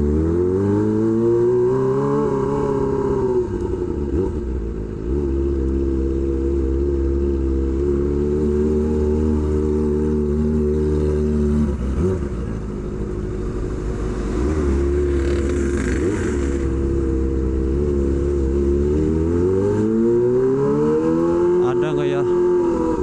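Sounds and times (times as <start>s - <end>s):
motorcycle engine running: 2.4s - 19.4s.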